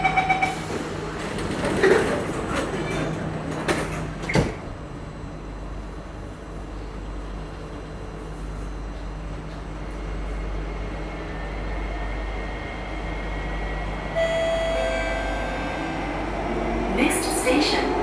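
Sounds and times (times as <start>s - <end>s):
train low hum: 0.0s - 18.0s
sliding doors shutting: 0.4s - 4.7s
door warning chime beeps: 14.2s - 16.0s.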